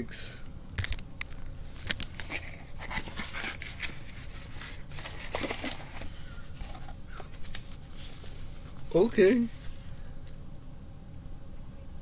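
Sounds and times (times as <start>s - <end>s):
packaging crinkling and tearing: 0.8s - 10.0s.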